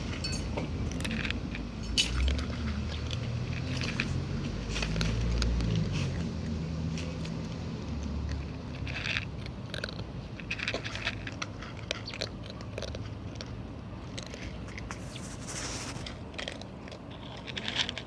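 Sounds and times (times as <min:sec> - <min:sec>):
cat chewing and crunching food: 0:00.0 - 0:18.0.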